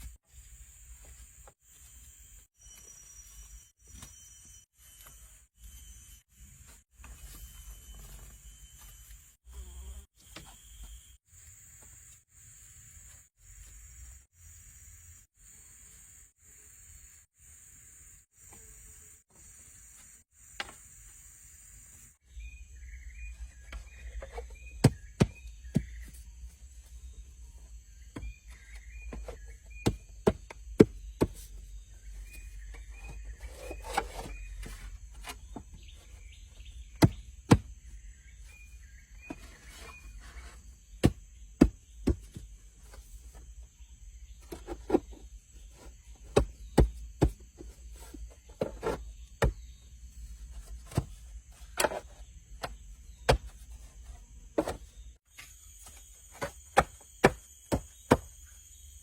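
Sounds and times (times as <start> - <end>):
blade chopping wood: 37.0 - 37.7, 56.3 - 58.4.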